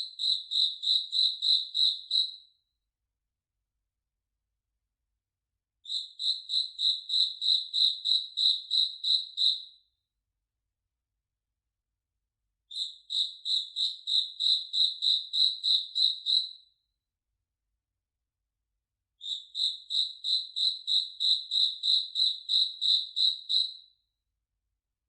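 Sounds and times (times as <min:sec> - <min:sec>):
cricket chirping: 0:00.0 - 0:02.4, 0:05.9 - 0:09.6, 0:12.7 - 0:16.5, 0:19.2 - 0:23.7.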